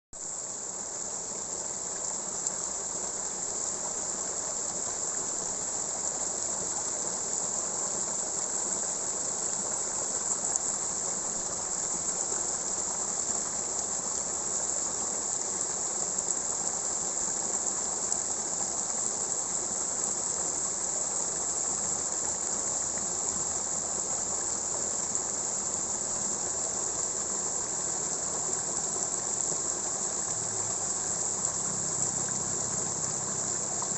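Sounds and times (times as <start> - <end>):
water flowing: 0.2 - 33.9
crickets chirring: 16.2 - 33.9.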